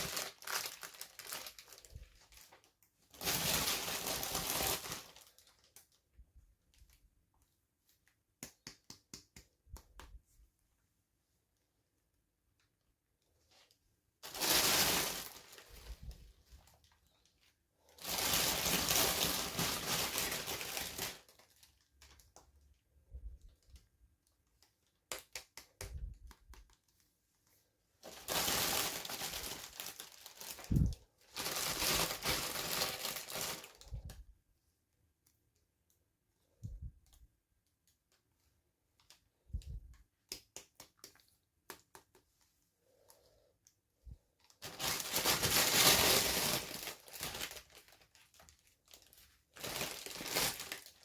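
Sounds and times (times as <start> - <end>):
packaging crinkling and tearing: 0.0 - 6.0, 14.2 - 22.4, 28.0 - 33.9, 44.5 - 51.0.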